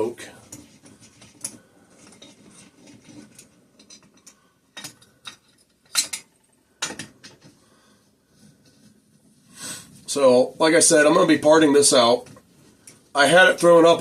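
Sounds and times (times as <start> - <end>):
tools and metal parts clanking: 0.0 - 7.5.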